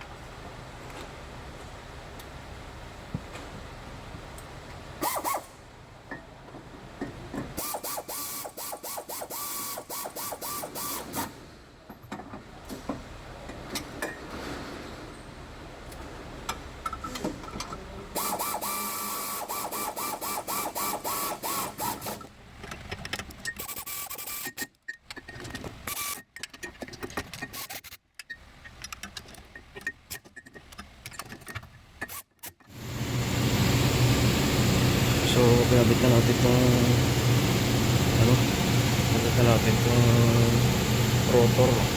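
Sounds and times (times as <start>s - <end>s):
ratchet wrench clicking rapidly: 7.6s - 11.2s, 18.2s - 22.2s.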